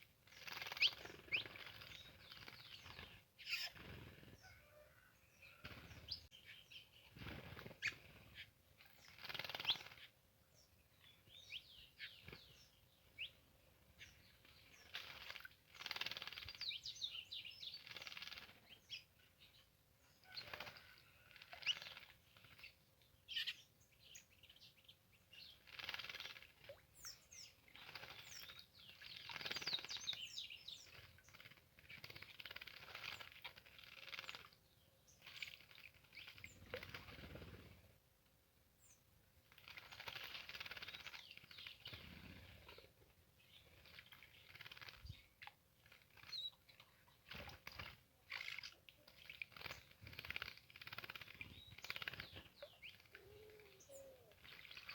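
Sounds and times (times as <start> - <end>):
birds splashing in water: 0.3 - 6.2, 14.7 - 16.7, 20.2 - 22.7, 25.5 - 30.2, 30.8 - 34.6, 35.2 - 37.8, 39.4 - 42.9, 43.6 - 53.7, 54.3 - 54.9
bird chirps: 0.3 - 26.4, 27.0 - 37.7, 39.9 - 54.9.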